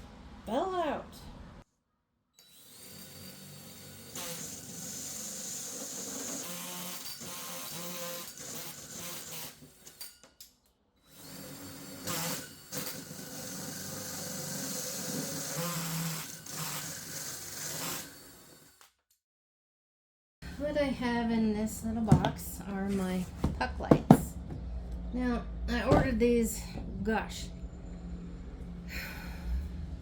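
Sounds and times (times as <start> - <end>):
power drill whirring: 2.4 - 10.2, 11.0 - 18.9.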